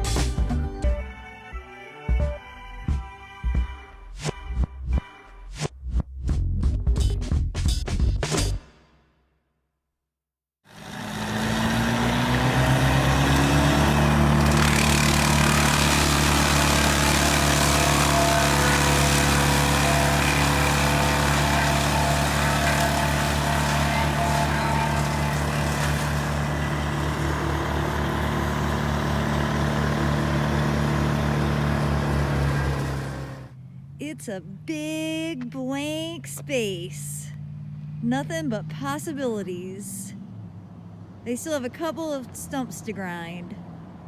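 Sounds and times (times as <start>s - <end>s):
large engine starting and revving: 10.7s - 34.6s.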